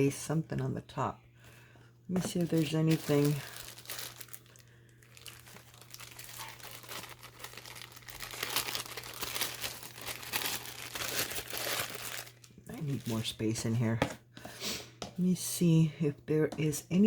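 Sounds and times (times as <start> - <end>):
craft scraps crinkling and rustling: 2.1 - 13.4.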